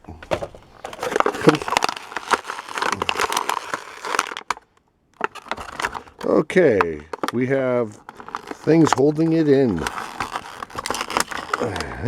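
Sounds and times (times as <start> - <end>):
plastic packaging crinkling: 0.0 - 12.0.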